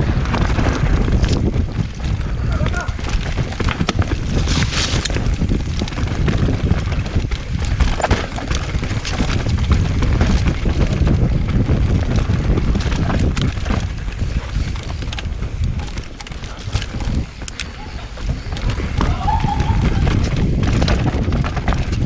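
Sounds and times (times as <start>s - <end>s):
bike rattling on dirt trail: 0.0s - 22.0s
wind on microphone: 0.0s - 22.0s.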